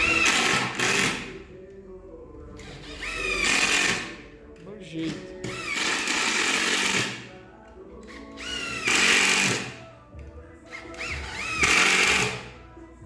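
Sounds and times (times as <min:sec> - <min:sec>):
drill-driver motor whine: 0:10.7 - 0:12.4.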